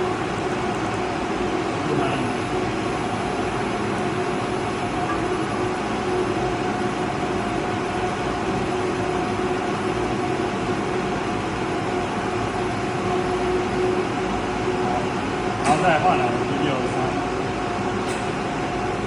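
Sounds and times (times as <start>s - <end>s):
machine hum: 0.0s - 19.0s.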